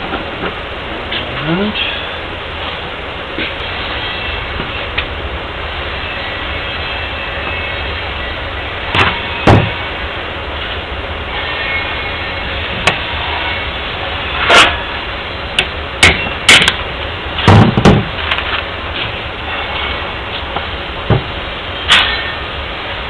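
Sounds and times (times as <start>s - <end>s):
train rumbling: 0.0s - 23.0s
sharp knocks: 9.0s - 9.8s.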